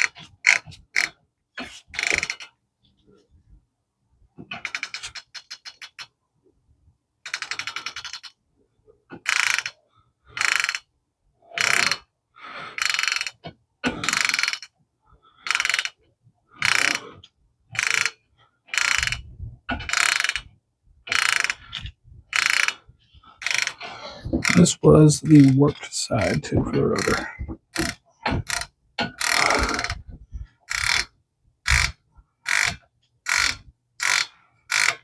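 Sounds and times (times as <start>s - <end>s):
hand ratchet clicking: 7.3s - 8.4s, 9.2s - 9.8s, 10.4s - 10.9s, 11.6s - 12.0s, 12.8s - 13.4s, 14.0s - 14.7s, 15.4s - 16.0s, 16.6s - 17.0s, 17.8s - 19.2s, 19.8s - 20.5s, 21.1s - 22.8s, 23.4s - 23.8s, 27.0s - 30.0s, 30.7s - 31.1s, 31.7s - 35.0s.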